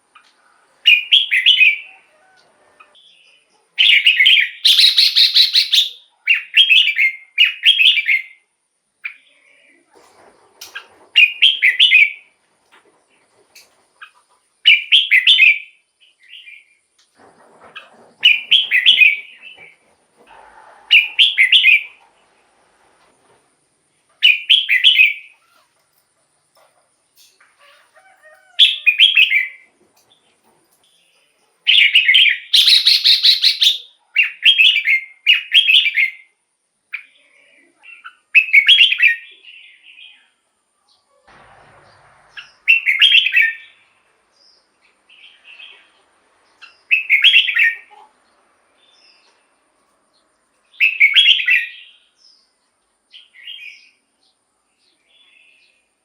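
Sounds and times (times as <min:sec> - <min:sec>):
bulbul singing bright phrases: 0:03.0 - 0:08.4.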